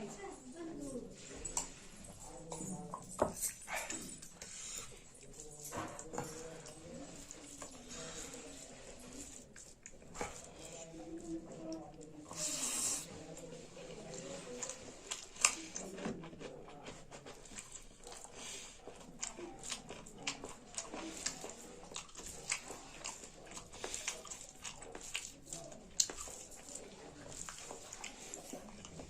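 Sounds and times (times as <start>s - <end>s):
person chewing with mouth open: 1.6s - 29.0s
lip and tongue clicks: 17.2s - 29.0s.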